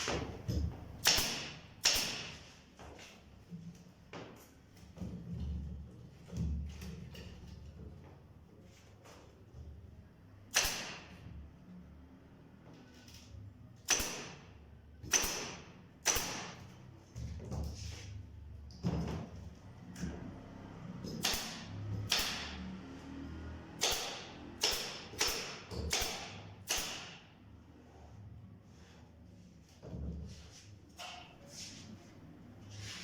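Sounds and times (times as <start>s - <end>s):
nails hammered into wood: 0.0s - 2.5s, 10.5s - 11.2s, 13.8s - 16.7s, 21.0s - 22.7s, 23.8s - 27.4s.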